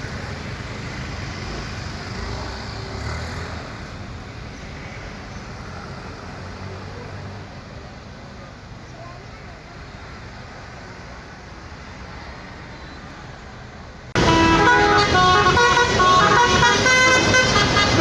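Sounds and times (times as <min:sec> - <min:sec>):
passing vehicle engine: 0:14.1 - 0:18.0.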